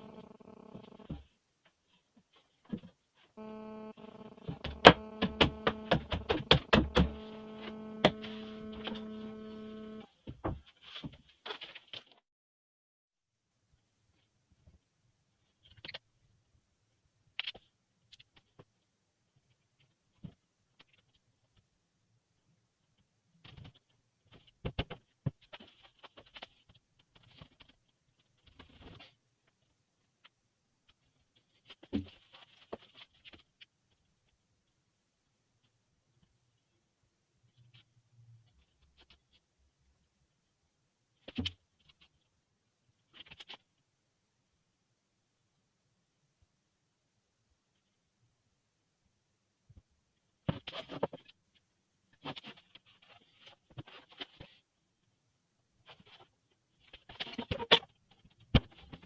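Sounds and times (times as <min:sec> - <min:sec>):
small electric motor humming: 0:03.4 - 0:10.0
sharp knocks: 0:04.4 - 0:08.3.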